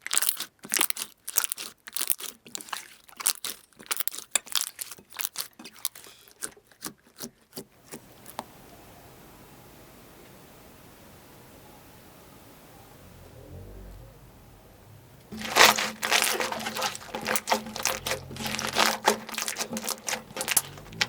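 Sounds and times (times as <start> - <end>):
crunchy material crackling: 0.0 - 8.4, 15.3 - 21.0.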